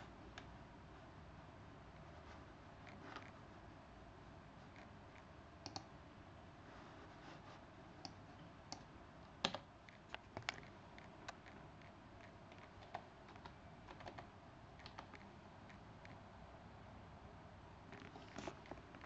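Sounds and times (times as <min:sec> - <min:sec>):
keyboard keystroke clicks: 0:05.6 - 0:05.9.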